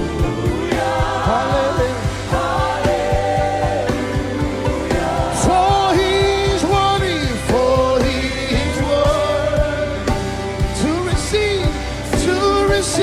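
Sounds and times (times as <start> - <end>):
band bass and drums: 0.0 - 13.0
voices singing slow melody: 0.0 - 13.0.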